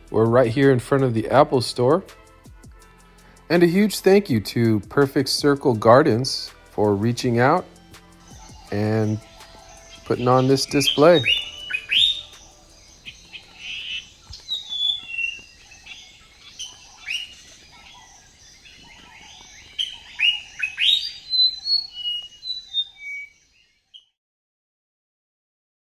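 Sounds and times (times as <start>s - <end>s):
small birds chirping: 4.1s - 24.2s.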